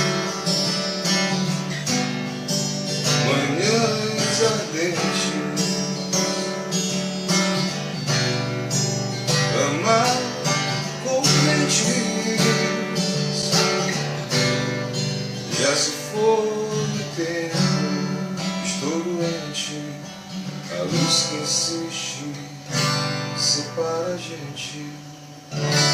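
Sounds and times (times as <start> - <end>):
acoustic guitar strumming: 0.0 - 25.9.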